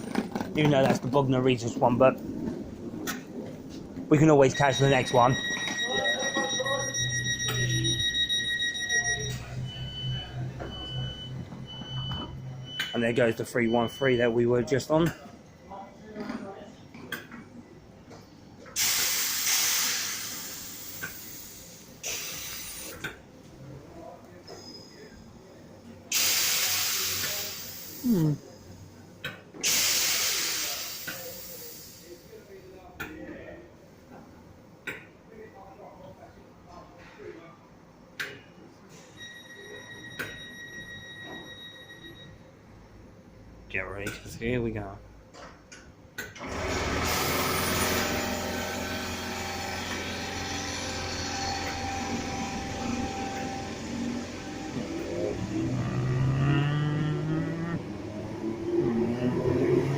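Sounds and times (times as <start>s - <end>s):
train passing close by: 1.0s - 9.7s, 47.0s - 56.5s
short falling tone: 51.5s - 57.9s.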